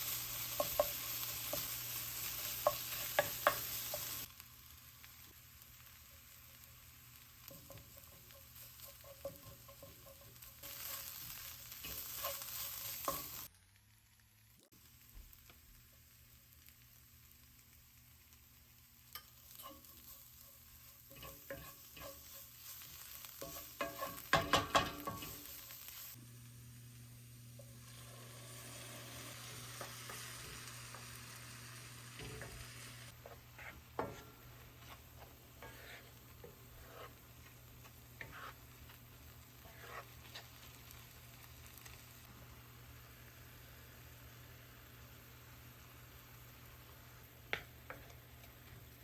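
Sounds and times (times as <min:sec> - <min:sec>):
spatula clicking and scraping pan: 0:00.0 - 0:04.4, 0:07.2 - 0:13.5, 0:19.1 - 0:26.1, 0:28.6 - 0:31.4, 0:32.1 - 0:42.0, 0:47.5 - 0:49.0
food sizzling in a pan: 0:00.0 - 0:49.0.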